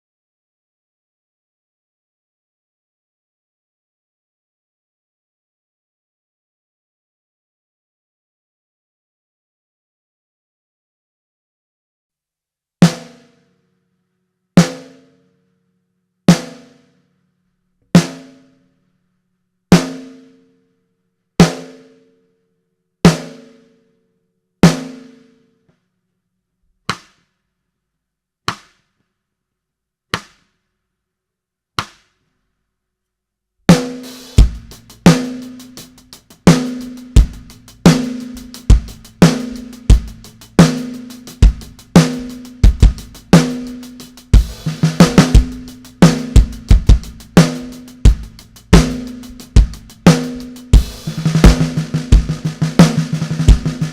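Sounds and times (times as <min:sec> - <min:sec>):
drum kit beat: 0:33.7 - 0:53.9.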